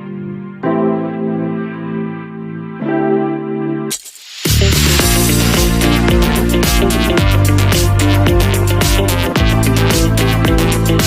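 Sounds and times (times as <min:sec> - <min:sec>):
drum and bass electronic music: 0:03.9 - 0:11.0.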